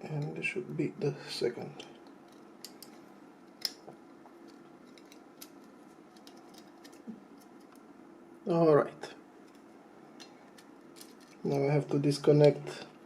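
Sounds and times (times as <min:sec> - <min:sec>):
small clicks of phone parts: 0:02.0 - 0:03.8, 0:04.4 - 0:07.8.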